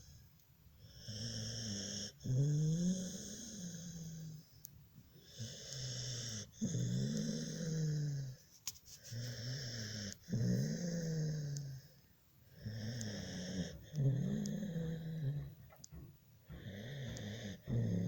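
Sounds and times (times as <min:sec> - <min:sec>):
pet snoring: 0:00.8 - 0:04.5, 0:05.2 - 0:08.4, 0:09.1 - 0:18.0.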